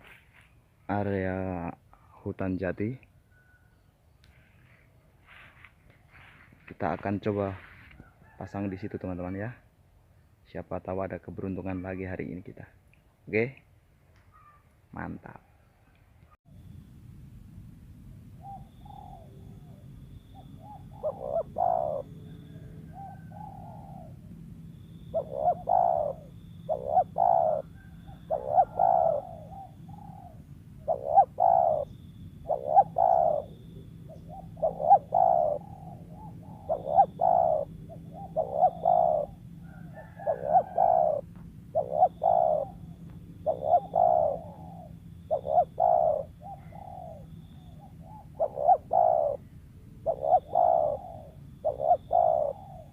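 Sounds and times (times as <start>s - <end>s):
dove cooing: 18.4s - 52.9s.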